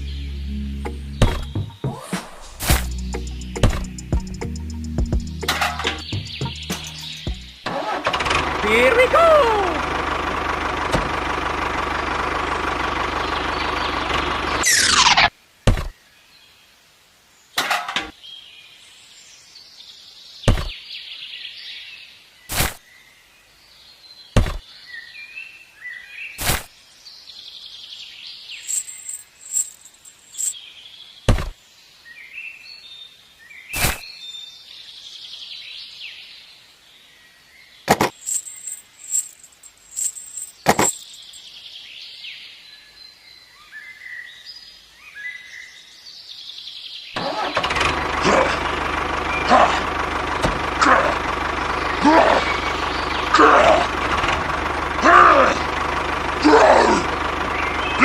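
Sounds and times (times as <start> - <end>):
birds chirping: 0.0 - 7.7, 8.6 - 9.9, 13.0 - 15.0, 27.0 - 47.2, 49.2 - 54.6, 56.9 - 58.0
sharp clicks or knocks: 37.9 - 38.2.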